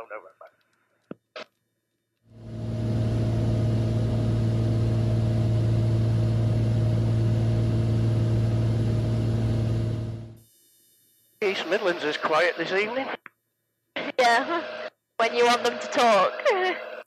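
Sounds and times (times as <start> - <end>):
propeller plane engine drone: 2.3 - 10.4.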